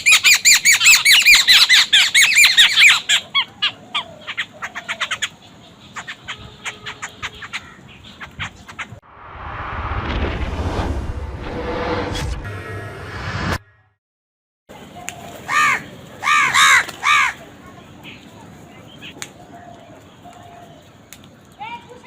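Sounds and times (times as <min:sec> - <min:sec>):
birds calling: 0:00.0 - 0:09.0, 0:14.7 - 0:22.0
rushing noise: 0:09.0 - 0:14.0.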